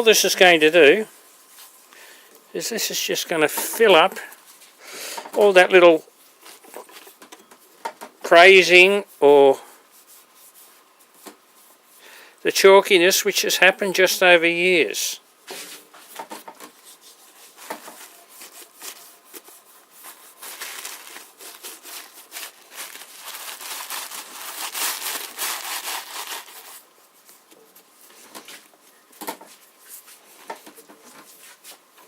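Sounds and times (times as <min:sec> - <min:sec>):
hand rubbing painted finish: 0:02.6 - 0:12.0, 0:15.4 - 0:28.9.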